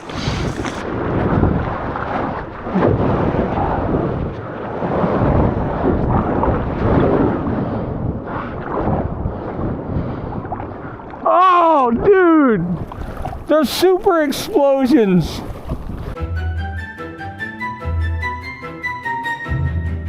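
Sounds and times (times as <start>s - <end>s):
waves crashing against a wall: 0.0s - 9.8s.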